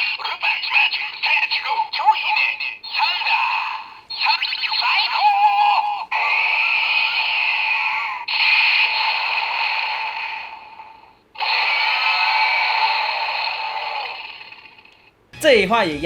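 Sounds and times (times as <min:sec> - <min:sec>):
toy electronic voice announcement: 0:00.0 - 0:06.4, 0:15.4 - 0:16.0.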